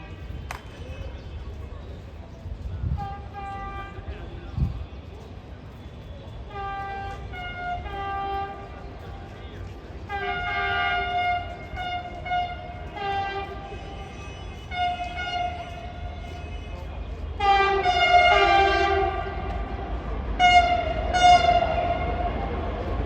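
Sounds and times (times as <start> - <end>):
train horn blasts: 2.9 - 4.1, 6.4 - 9.4, 10.0 - 22.8.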